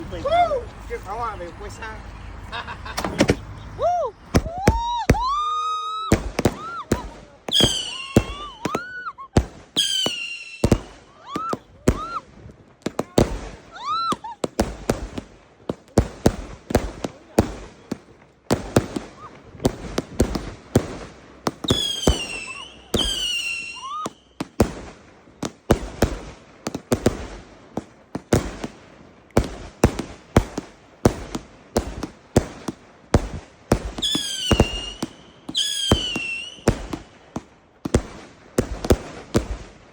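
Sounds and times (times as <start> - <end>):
fireworks bangs: 0.0 - 39.9
whistling firework shells: 2.9 - 12.3, 13.2 - 15.1, 18.6 - 24.8, 33.2 - 39.6.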